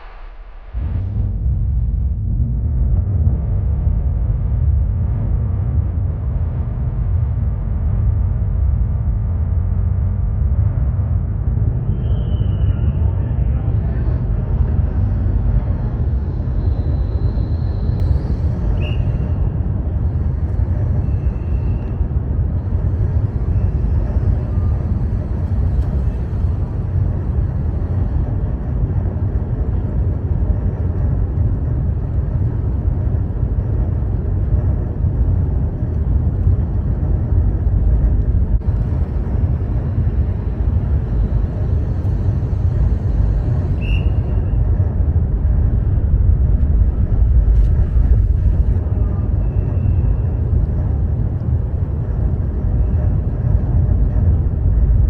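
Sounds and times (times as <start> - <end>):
ferry rumbling and rushing: 13.7 - 55.0.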